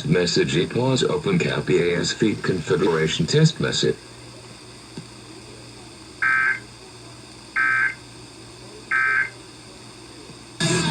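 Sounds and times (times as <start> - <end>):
faint steady hum: 0.0 - 10.9
two-tone digital squawks: 6.2 - 6.7, 7.6 - 8.0, 8.9 - 9.3.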